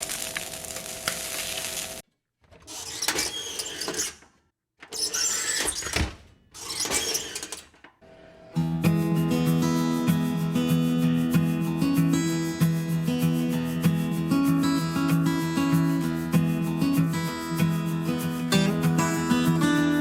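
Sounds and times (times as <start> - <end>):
kitchen cooking hiss: 0.0 - 2.0.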